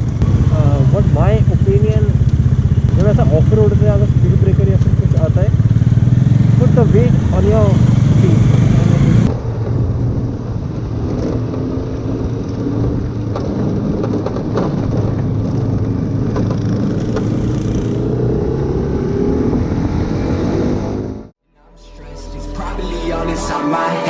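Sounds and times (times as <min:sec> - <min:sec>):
motorcycle engine accelerating: 0:00.0 - 0:21.4
road and wind noise: 0:00.0 - 0:21.4.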